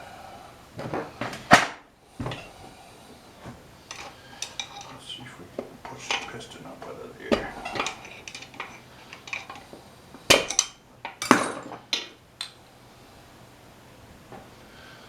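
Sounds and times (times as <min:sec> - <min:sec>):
hand tools knocking on metal: 0:03.9 - 0:12.6.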